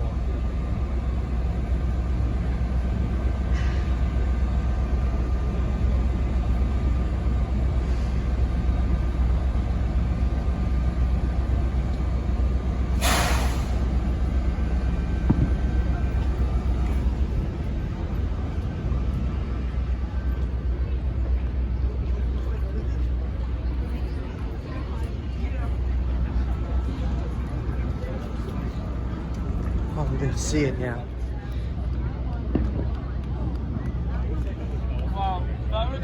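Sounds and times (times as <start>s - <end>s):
low rumble: 0.0s - 36.0s
air brake hiss: 12.9s - 14.0s.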